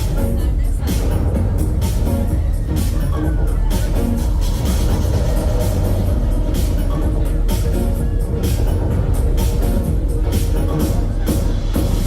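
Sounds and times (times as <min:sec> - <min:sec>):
loud music with heavy bass: 0:00.0 - 0:12.0.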